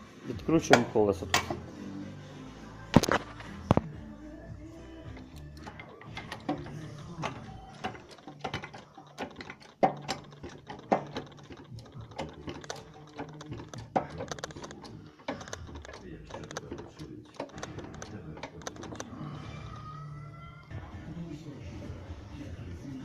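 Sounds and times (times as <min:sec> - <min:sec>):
ratchet wrench clicking: 0:05.2 - 0:19.0
metallic knocks: 0:05.6 - 0:19.0.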